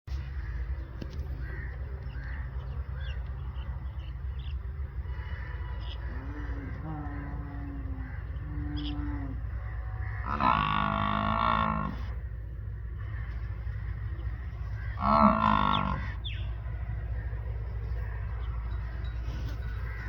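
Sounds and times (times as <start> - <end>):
small birds chirping: 0.1 - 20.0
steady low rumble: 0.1 - 20.0
buffalo lowing: 6.0 - 20.0.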